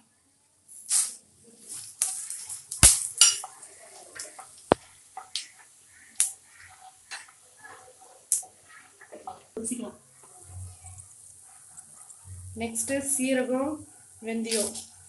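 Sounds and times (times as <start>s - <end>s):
spoon scraping frying pan: 3.1s - 12.4s.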